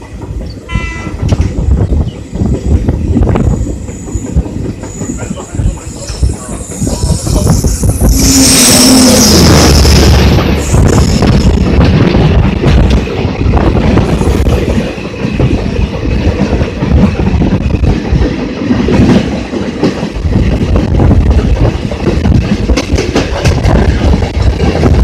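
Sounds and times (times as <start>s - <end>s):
train rumbling past: 0.0s - 25.0s.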